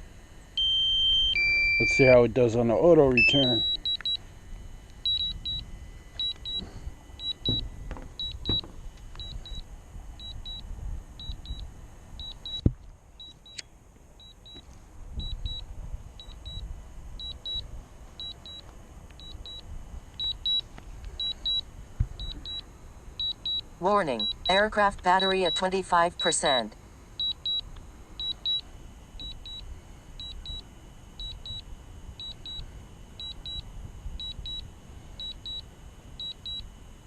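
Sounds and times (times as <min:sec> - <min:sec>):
short high beeps: 0:00.6 - 0:02.2, 0:03.1 - 0:04.2, 0:05.0 - 0:07.6.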